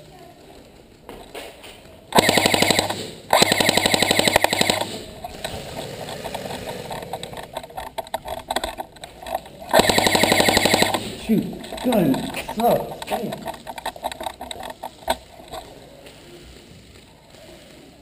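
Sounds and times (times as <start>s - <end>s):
airsoft gun full-auto bursts: 2.1s - 15.2s
scattered airsoft shots: 2.1s - 15.2s.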